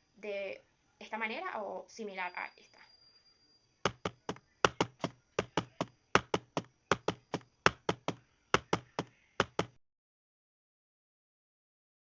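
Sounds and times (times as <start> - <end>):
heart sounds in gallop rhythm: 3.9 - 9.8.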